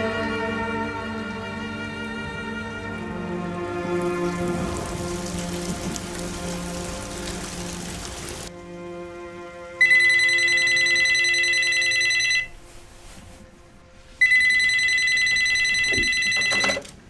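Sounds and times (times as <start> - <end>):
telephone ringing: 9.8 - 12.5, 14.2 - 16.9.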